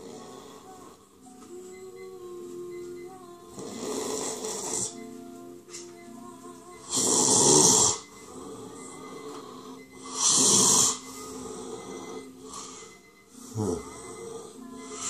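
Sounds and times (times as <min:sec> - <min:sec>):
steady faint tones: 0:07.7 - 0:15.0.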